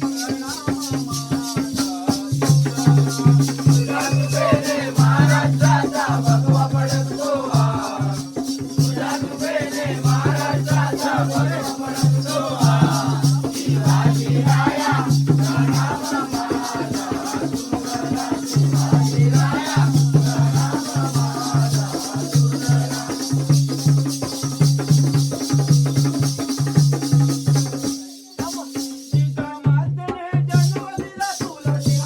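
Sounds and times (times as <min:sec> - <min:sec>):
low drum beat: 0:00.0 - 0:21.4
man singing: 0:00.0 - 0:23.8, 0:28.3 - 0:32.0
jingling percussion: 0:00.0 - 0:32.0
steady held tone: 0:03.4 - 0:06.2.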